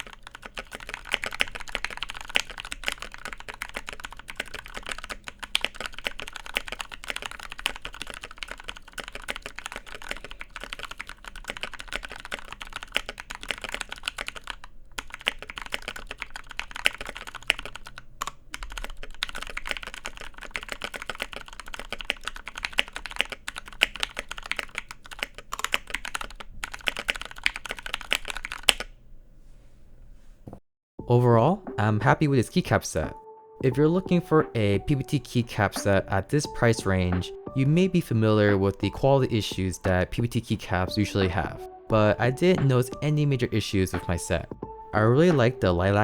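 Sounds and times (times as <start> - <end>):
mechanical keyboard typing: 0.0 - 29.0.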